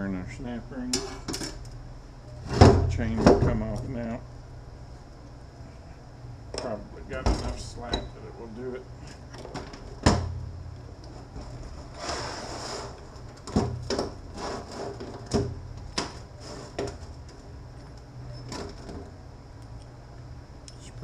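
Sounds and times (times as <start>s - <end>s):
metal scraping: 11.2s - 13.2s, 14.2s - 15.3s.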